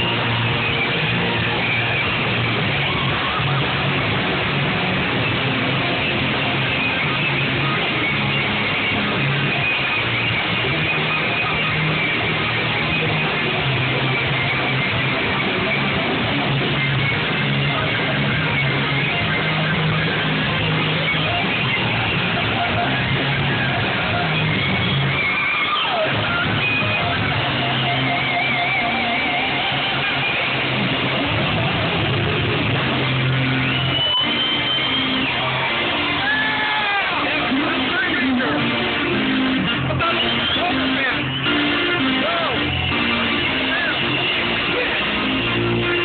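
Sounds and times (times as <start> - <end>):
bass guitar: 0.0 - 46.0
electric guitar strumming: 0.0 - 46.0.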